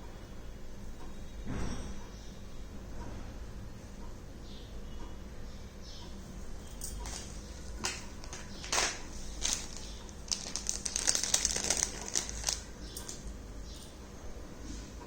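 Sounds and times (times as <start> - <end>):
packaging crinkling: 7.0 - 13.4
packaging rustling and clicking: 7.0 - 13.8.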